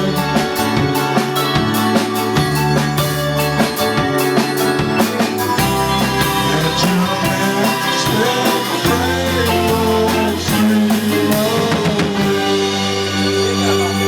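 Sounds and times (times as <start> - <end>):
indie pop band playing live: 0.0 - 14.0.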